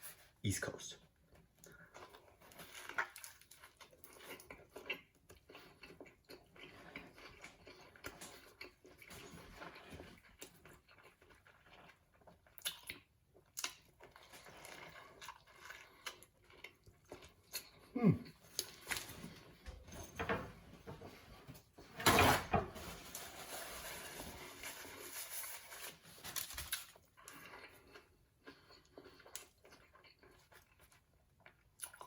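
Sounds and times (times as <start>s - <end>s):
person chewing with wet mouth clicks: 12.5s - 13.9s.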